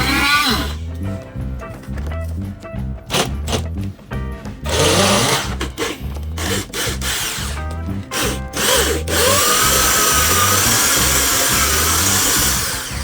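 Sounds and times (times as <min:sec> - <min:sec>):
background music with a beat: 0:00.9 - 0:13.0
power tool whining: 0:04.7 - 0:13.0.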